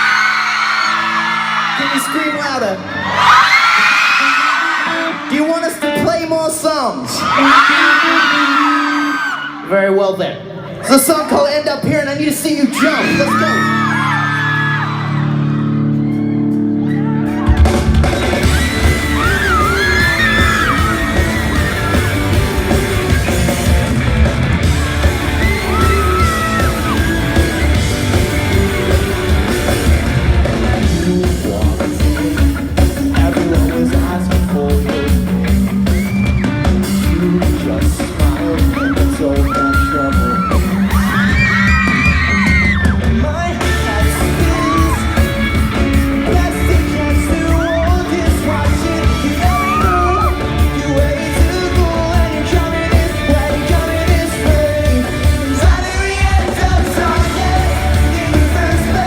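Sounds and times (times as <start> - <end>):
crowd screaming and yelling: 0.0 - 59.0
live rock band playing: 12.7 - 59.0.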